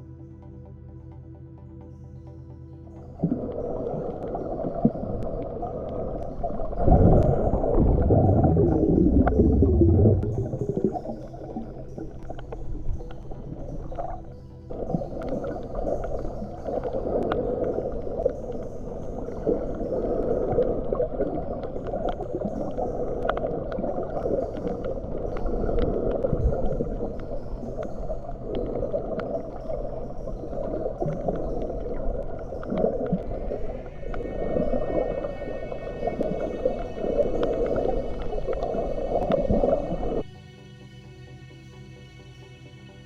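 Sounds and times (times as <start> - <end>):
muffled underwater rush: 3.1 - 40.3
sharp underwater clicks: 3.2 - 34.7.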